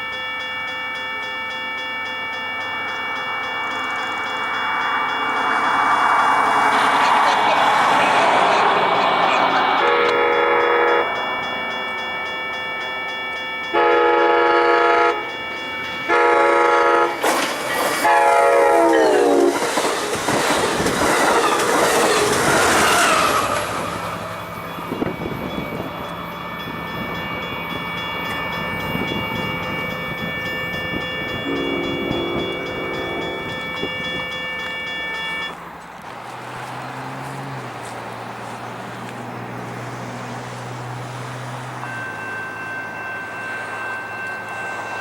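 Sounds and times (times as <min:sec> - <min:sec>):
train wheels clattering on rails: 0:03.7 - 0:10.6, 0:16.6 - 0:40.6
locomotive horn blasts: 0:09.8 - 0:11.2, 0:13.6 - 0:15.4, 0:16.0 - 0:17.2, 0:18.0 - 0:19.6, 0:31.3 - 0:33.7.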